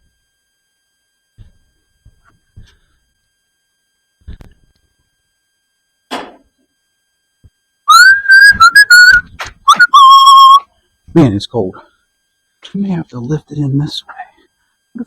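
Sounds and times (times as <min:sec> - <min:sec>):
person whistling loudly: 0:07.9 - 0:10.7.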